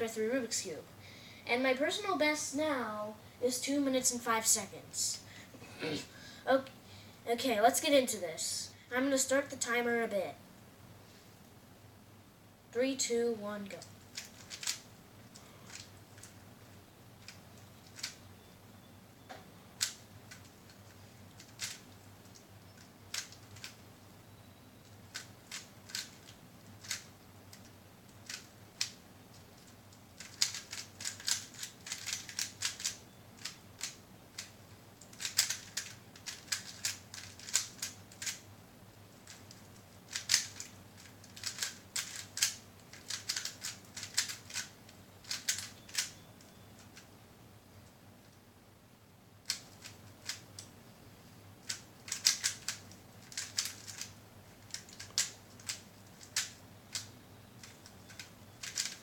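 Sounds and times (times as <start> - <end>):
puzzle cube plastic layers clicking: 13.8 - 16.4, 17.2 - 18.3, 19.8 - 23.8, 24.8 - 47.1, 49.4 - 50.8, 51.6 - 59.0.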